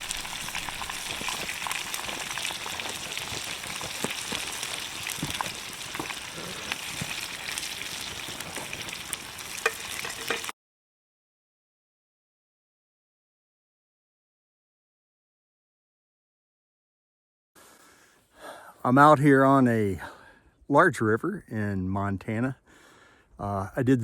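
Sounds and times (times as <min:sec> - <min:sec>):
chicken sizzling in hot oil: 0:00.0 - 0:10.5
oil popping: 0:00.0 - 0:10.5.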